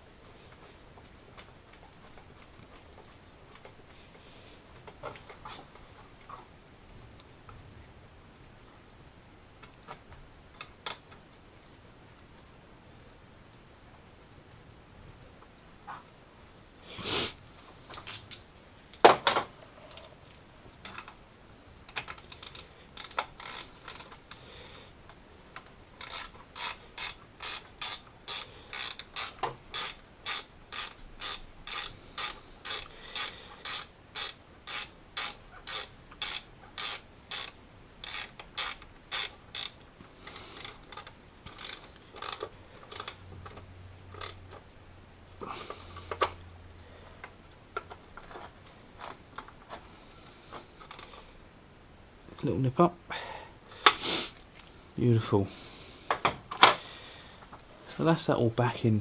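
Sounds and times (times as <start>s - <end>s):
hand ratchet clicking: 21.9s - 24.4s, 26.0s - 44.6s, 50.8s - 51.1s.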